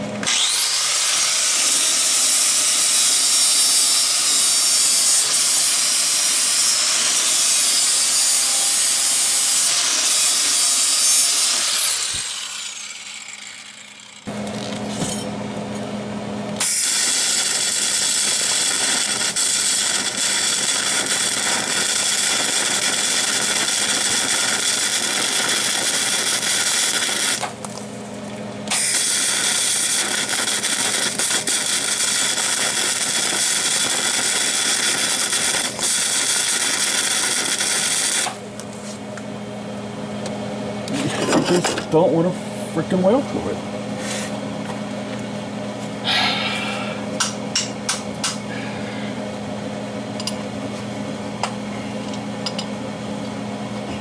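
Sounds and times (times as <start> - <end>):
welding arc sputtering and crackling: 0.3 - 14.6, 16.6 - 27.9, 28.7 - 38.6
electrical hum: 14.3 - 54.0.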